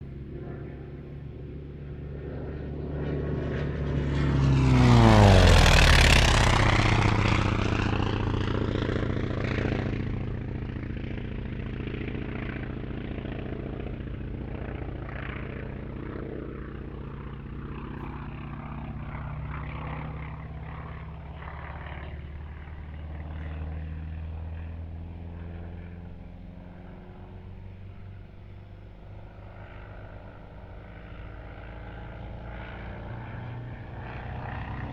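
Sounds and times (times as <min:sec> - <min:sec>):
propeller plane passing: 0:00.0 - 0:34.9.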